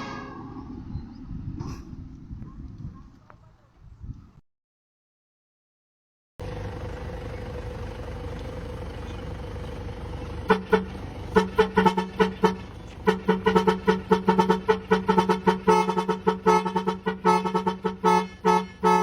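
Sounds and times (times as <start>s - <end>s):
air horn short toots: 0.0s - 0.7s, 10.5s - 19.0s.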